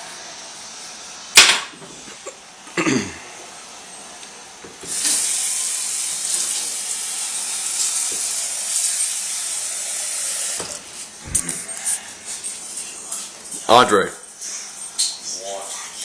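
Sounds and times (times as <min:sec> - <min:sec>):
water running from a tap: 0:04.9 - 0:10.9.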